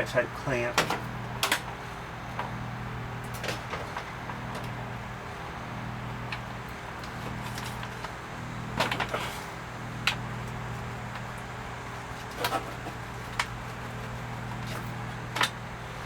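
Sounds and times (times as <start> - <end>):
steady low hum: 0.0 - 16.0
sharp clicks and knocks of parts: 0.7 - 1.8, 14.6 - 15.6.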